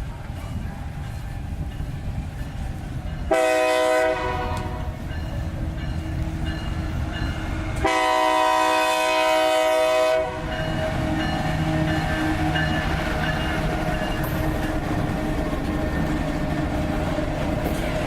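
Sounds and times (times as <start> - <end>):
passing train rumble: 0.0 - 18.0
locomotive air horn blasts: 3.3 - 5.0, 7.8 - 10.6.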